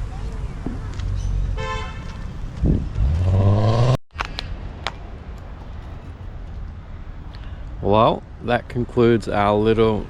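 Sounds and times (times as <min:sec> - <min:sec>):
vehicle engine accelerating: 0:02.7 - 0:04.0.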